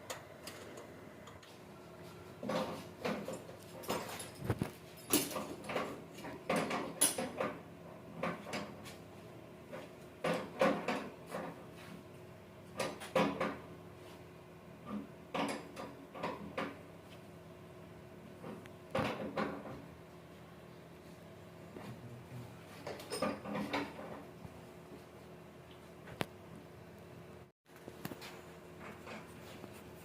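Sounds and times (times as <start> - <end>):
knocking and clattering: 10.2 - 11.6, 18.4 - 19.9.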